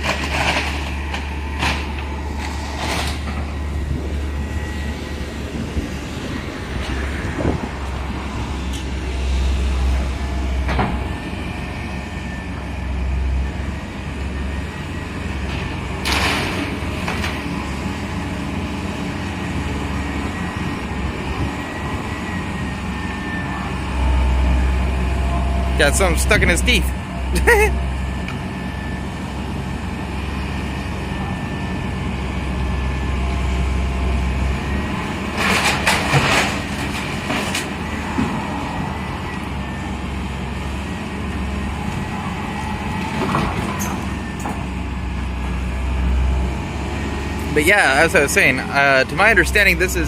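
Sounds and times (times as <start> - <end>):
debris crashing and clanking: 0.0 - 3.4, 35.2 - 38.4
excavator diesel engine running: 0.0 - 50.0.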